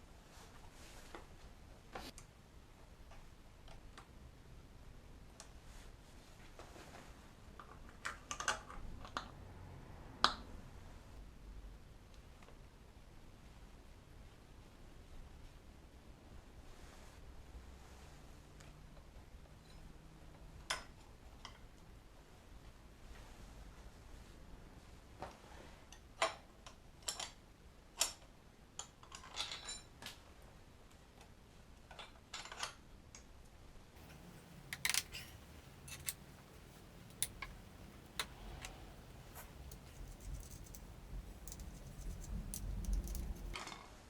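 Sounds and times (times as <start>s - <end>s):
tools clicking and knocking on metal: 34.0s - 43.6s.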